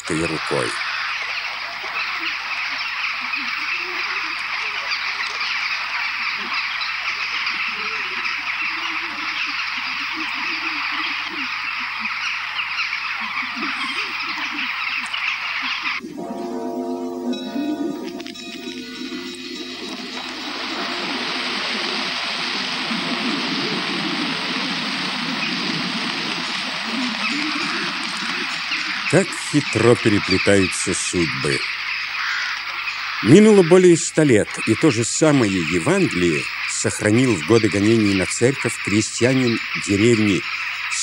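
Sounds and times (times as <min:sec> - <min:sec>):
waterfowl honking: 0:00.0 - 0:41.0
running water rushing: 0:19.0 - 0:31.4.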